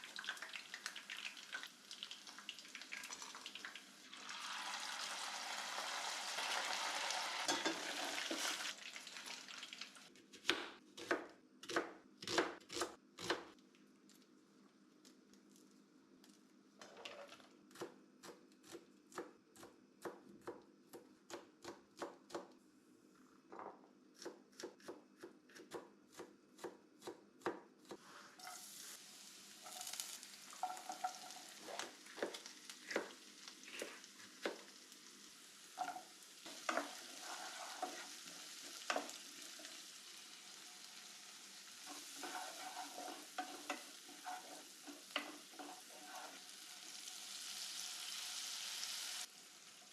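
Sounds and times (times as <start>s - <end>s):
oil sizzling in a pan: 0.0s - 10.1s, 28.4s - 49.9s
spatula knocking and scraping: 35.8s - 39.2s, 41.9s - 46.4s.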